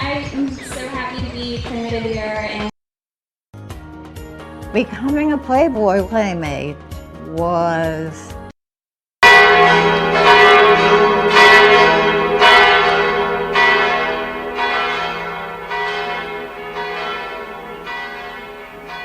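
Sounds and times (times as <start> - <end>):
church bells ringing: 9.2 - 19.0.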